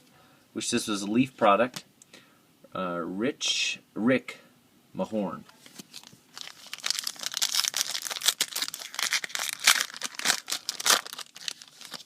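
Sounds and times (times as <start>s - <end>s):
wrapper crinkling and tearing: 5.6s - 12.0s.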